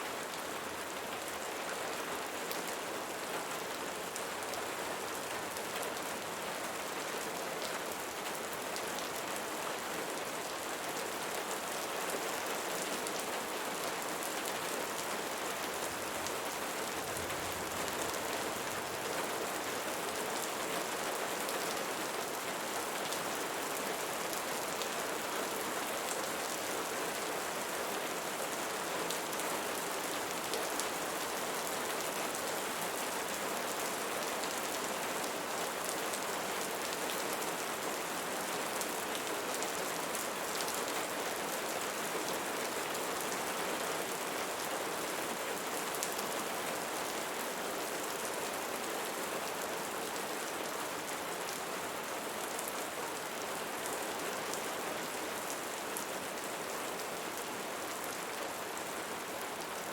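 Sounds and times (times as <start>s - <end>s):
rain pattering: 14.1s - 25.2s.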